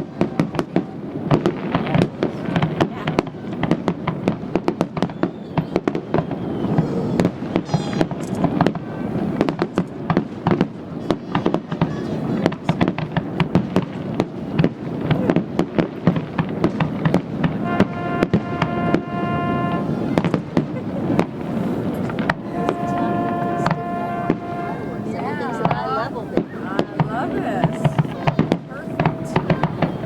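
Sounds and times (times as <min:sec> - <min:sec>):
fireworks cracking and banging: 0:00.0 - 0:30.0
horn honking: 0:17.6 - 0:20.3, 0:21.9 - 0:30.0.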